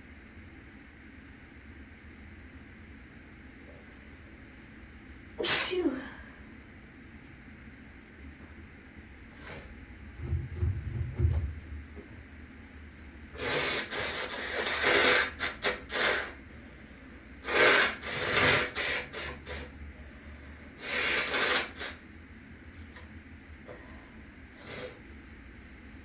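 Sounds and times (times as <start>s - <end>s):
faint fan hum: 0.0s - 26.0s
low thuds: 10.2s - 11.9s
person blowing and sniffing nose: 13.4s - 16.4s, 17.4s - 19.7s, 20.8s - 22.0s, 24.6s - 25.0s.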